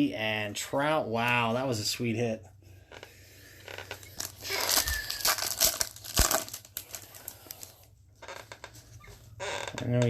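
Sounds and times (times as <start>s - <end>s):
foil wrapper crinkling and tearing: 3.7s - 7.9s.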